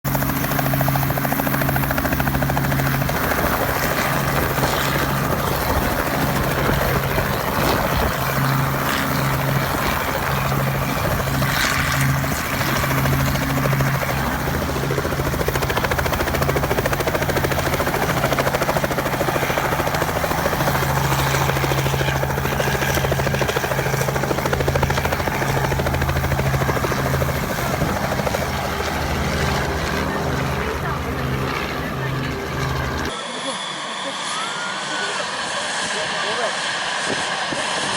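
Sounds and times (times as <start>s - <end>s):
helicopter running: 0.0s - 37.9s.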